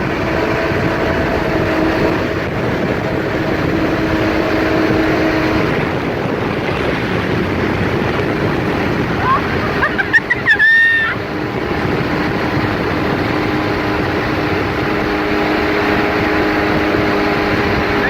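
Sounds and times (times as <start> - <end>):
water rushing: 0.0 - 18.0
watercraft engine running: 0.0 - 18.0
wind: 0.0 - 18.0.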